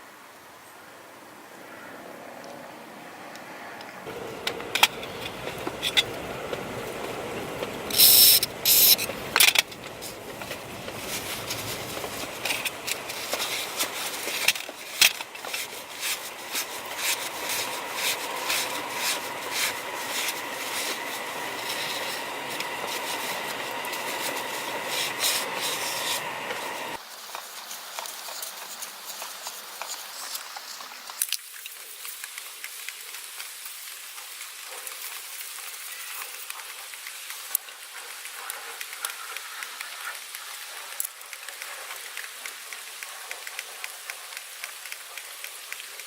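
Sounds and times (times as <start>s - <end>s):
loud noisy bursts: 4.1s - 27.0s
small parts and tools clicking: 4.1s - 33.8s.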